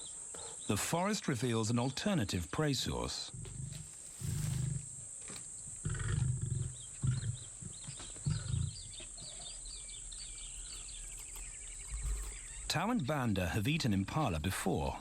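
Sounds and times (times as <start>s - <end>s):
faint bird chirps: 5.6s - 13.6s
lion calling: 5.8s - 9.6s.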